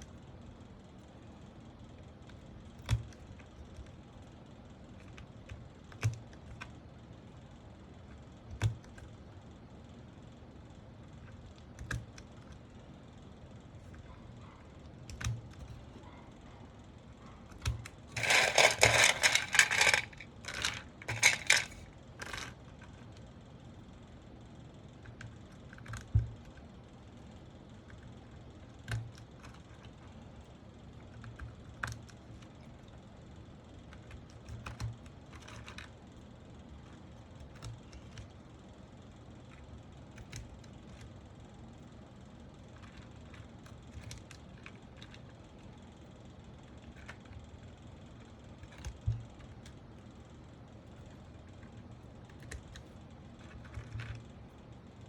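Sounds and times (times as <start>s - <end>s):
faint steady hum: 0.0s - 55.0s
keyboard parts clicking: 2.2s - 4.0s, 4.9s - 6.8s, 8.0s - 9.2s, 11.2s - 12.7s, 13.8s - 16.1s, 17.4s - 23.3s, 25.0s - 26.7s, 28.8s - 30.2s, 31.0s - 33.0s, 33.8s - 36.0s, 36.8s - 38.4s, 39.5s - 41.1s, 42.7s - 45.7s, 46.8s - 49.8s, 51.0s - 54.4s.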